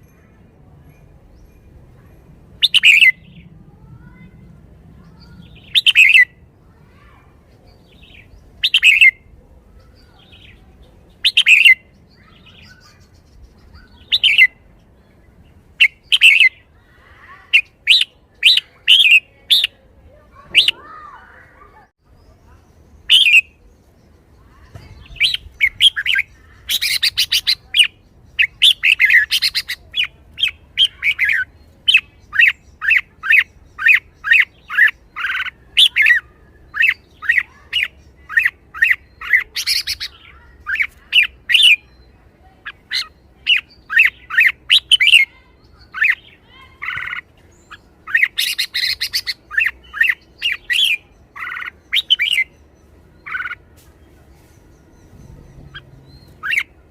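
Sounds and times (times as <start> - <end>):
bird calling sharp rik notes: 2.6 - 3.3, 8.6 - 9.2.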